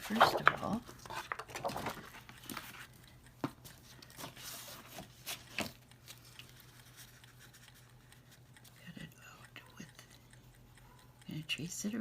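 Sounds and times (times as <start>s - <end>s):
paper rustling: 0.0s - 2.9s, 4.0s - 7.6s
paper tapping and clicking: 0.0s - 6.4s.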